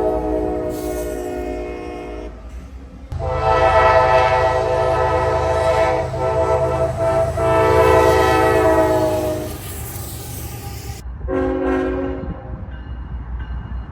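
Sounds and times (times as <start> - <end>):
locomotive air horn: 0.0 - 9.7, 11.3 - 12.4
low train rumble: 0.0 - 13.9.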